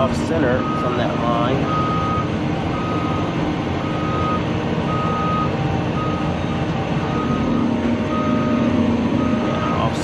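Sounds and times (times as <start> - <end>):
diesel engine running: 0.0 - 10.0
excavator travel alarm beeping: 0.0 - 10.0.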